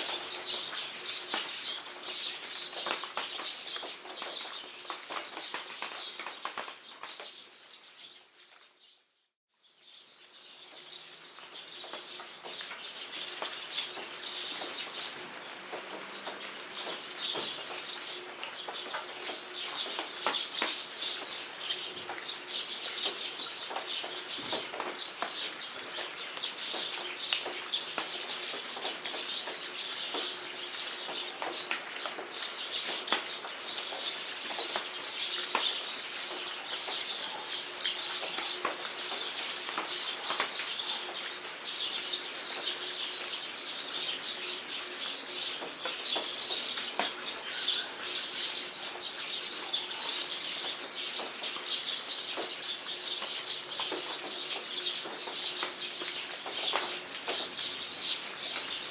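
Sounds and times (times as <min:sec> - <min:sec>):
rain pattering: 0:00.0 - 0:08.7, 0:10.2 - 0:58.9
songbirds chirping: 0:00.0 - 0:58.9
water drips clicking: 0:48.4 - 0:58.9.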